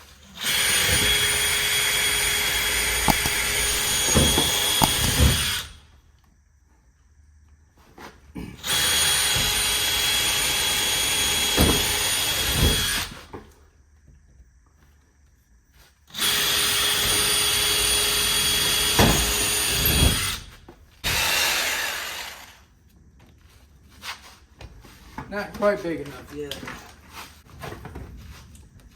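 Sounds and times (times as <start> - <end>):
handheld power tool cutting: 0.2 - 5.8, 8.6 - 13.2, 16.1 - 22.7.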